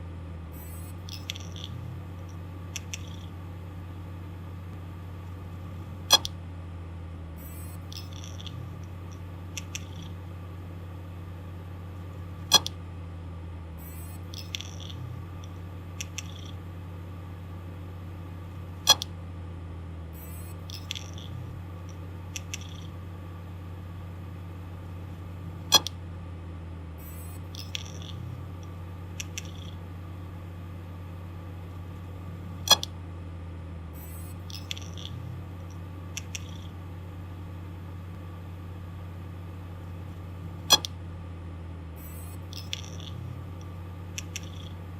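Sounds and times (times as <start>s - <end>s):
hard disk drive humming: 0.0s - 44.9s.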